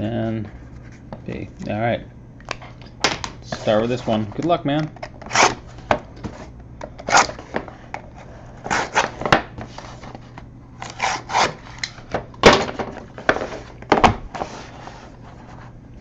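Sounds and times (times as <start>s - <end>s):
cardboard box rustling and scraping: 7.1s - 11.8s, 13.2s - 15.8s.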